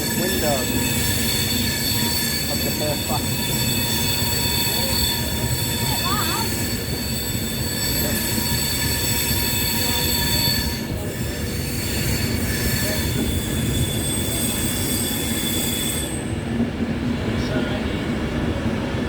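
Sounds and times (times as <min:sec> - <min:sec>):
high train whines: 0:00.0 - 0:19.0
train wheels rumbling on rail: 0:00.0 - 0:19.0.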